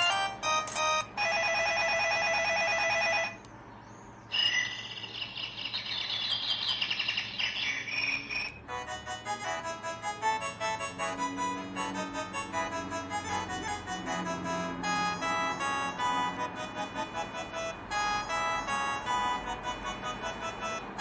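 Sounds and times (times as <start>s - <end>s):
pulsing electronic phone ring: 0.0s - 3.4s
ringtone melody: 0.0s - 3.5s, 4.3s - 21.0s
high warbling chirps: 4.3s - 8.6s.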